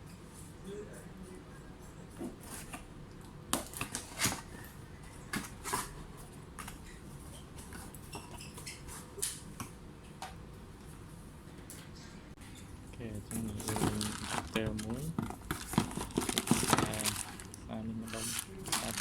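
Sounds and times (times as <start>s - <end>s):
packaging rustling: 13.5s - 19.0s.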